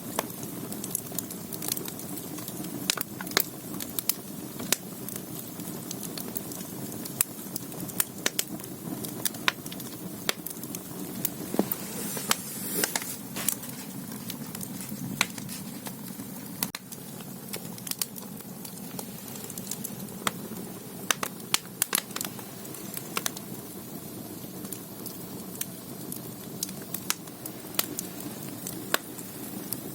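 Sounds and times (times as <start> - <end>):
firewood crackling and popping: 0.0 - 29.9
low rush of flame: 0.1 - 29.9
brief hiss: 11.5 - 13.7.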